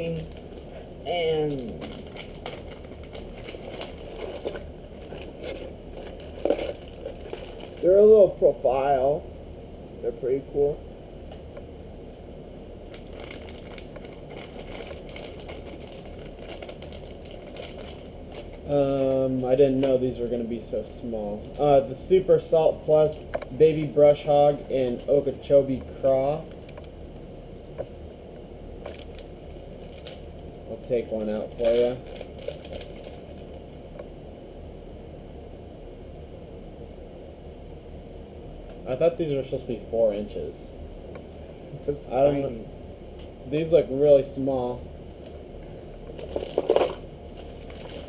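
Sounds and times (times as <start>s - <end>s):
steady low hum: 0.0s - 48.0s
plastic packaging crinkling: 1.5s - 8.4s, 12.9s - 20.0s, 28.8s - 33.7s, 46.0s - 48.0s.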